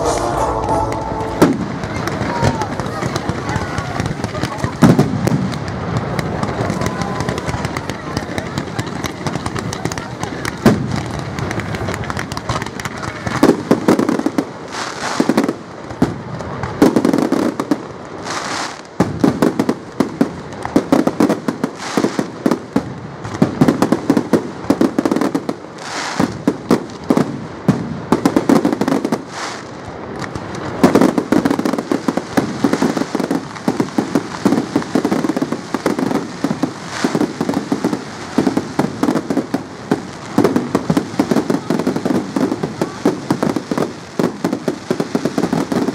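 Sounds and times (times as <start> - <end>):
fireworks crackling and popping: 0.0 - 45.9.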